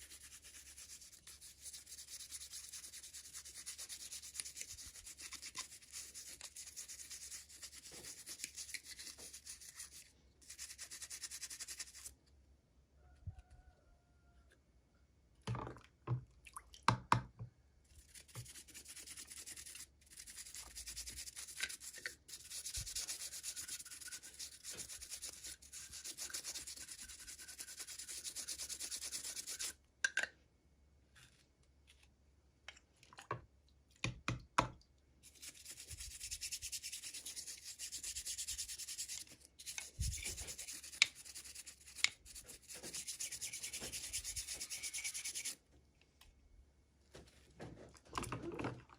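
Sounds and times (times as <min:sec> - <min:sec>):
hands rubbing packaging: 0:00.0 - 0:12.1, 0:18.0 - 0:29.7, 0:35.3 - 0:45.6.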